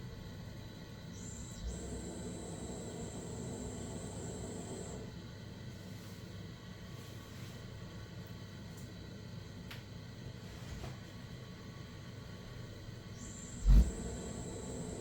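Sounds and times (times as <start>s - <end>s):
boiler high-pitched whine: 0.0s - 5.7s, 11.3s - 15.0s
low hum: 1.2s - 5.1s, 13.2s - 15.0s.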